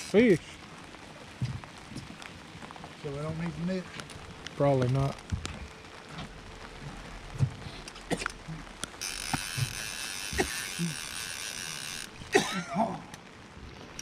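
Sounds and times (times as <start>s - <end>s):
fishing reel whirring: 9.0s - 12.4s.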